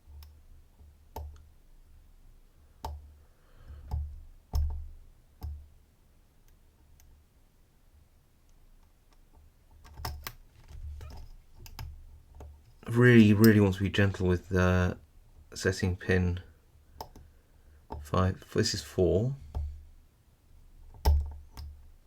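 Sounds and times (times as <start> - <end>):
lock pick clicking and tapping: 9.1 - 12.6, 17.0 - 17.3, 20.9 - 21.8.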